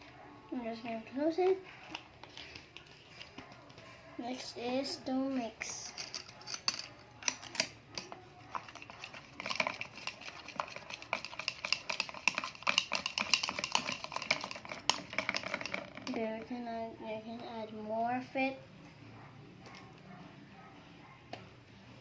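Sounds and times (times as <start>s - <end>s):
slime mixing clicks and scrapes: 8.5s - 16.4s.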